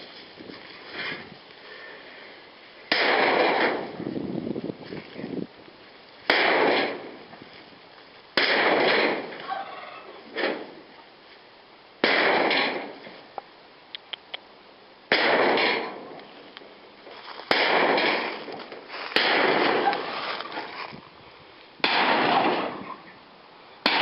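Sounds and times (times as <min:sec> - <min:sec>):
loud crashes of breaking material: 0:08.4 - 0:09.4, 0:21.8 - 0:22.8
small cracks: 0:15.2 - 0:21.0.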